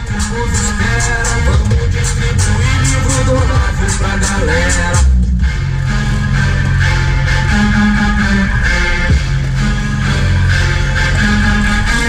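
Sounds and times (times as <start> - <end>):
instrumental song with bass line: 0.0 - 12.0.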